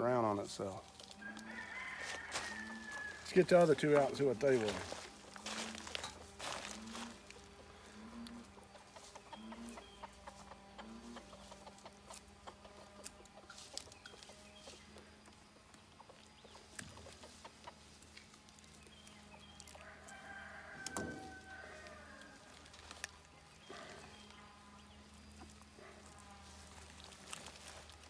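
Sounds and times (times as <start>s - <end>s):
steady low hum: 0.0s - 20.1s, 21.3s - 28.0s
chickens clucking: 0.0s - 28.0s.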